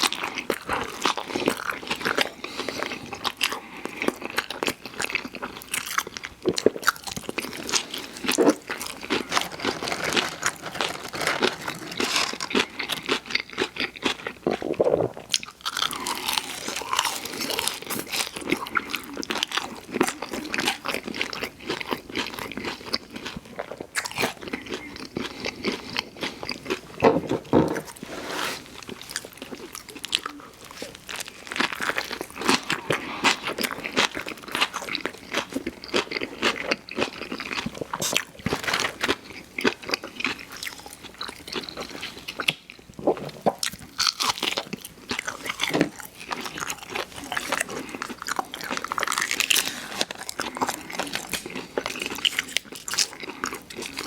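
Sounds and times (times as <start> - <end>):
crunchy food chewing: 0.0 - 54.0.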